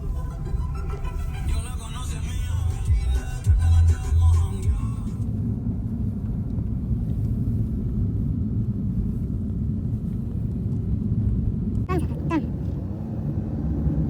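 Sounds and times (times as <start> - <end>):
music: 0.0 - 5.2.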